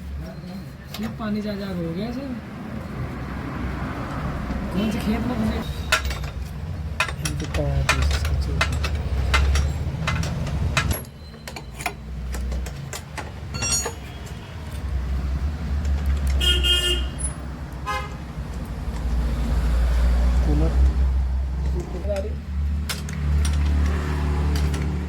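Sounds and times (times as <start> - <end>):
motor traffic rumbling: 0.0 - 25.0
sharp metallic clicks and knocks: 5.6 - 15.0, 15.7 - 16.4, 21.6 - 25.0
vehicle horn toots: 16.4 - 18.2.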